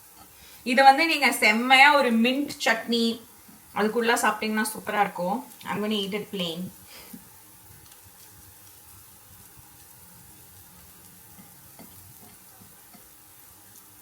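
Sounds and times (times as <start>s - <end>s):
food sizzling in oil: 0.0s - 14.0s
oil ticking: 3.2s - 14.0s.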